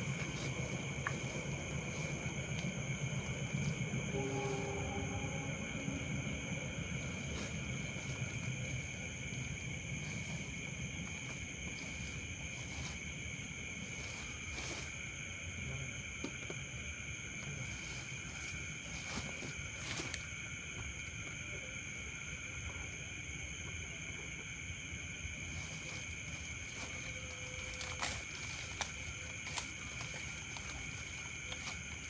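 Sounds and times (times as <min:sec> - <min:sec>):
high insect chirp: 0:00.0 - 0:32.0
high insect drones: 0:00.0 - 0:32.0.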